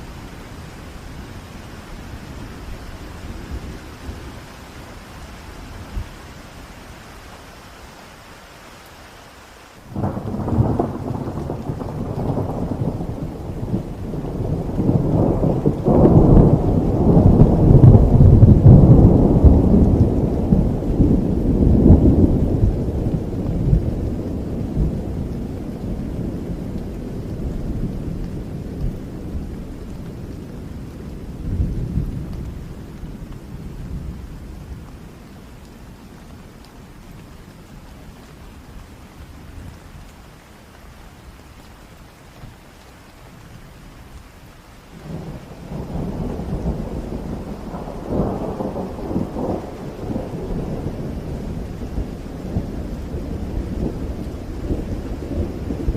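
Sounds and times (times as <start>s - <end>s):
heavy rain falling: 0.0s - 55.9s
thunder rumbling: 9.9s - 36.6s, 44.9s - 55.9s.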